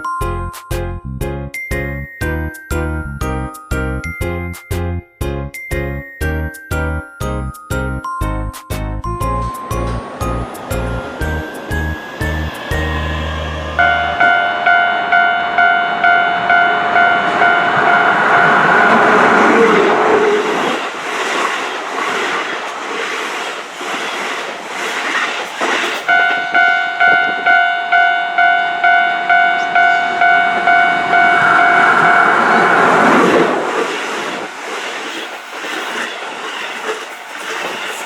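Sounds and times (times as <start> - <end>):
level crossing bell ringing: 1.6 - 19.5, 26.1 - 32.7
train wheels clattering: 9.3 - 13.0, 17.7 - 27.5.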